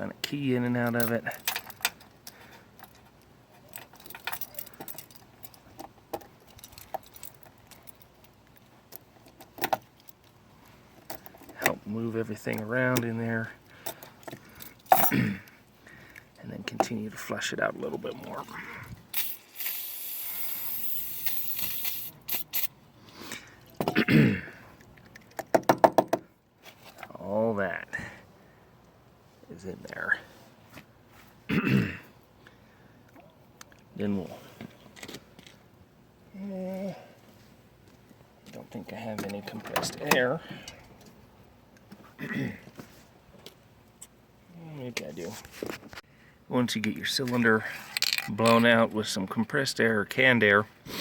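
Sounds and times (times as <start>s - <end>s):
light metallic clicks and jingles: 0.7s - 17.0s
aerosol spray hissing: 19.2s - 22.4s.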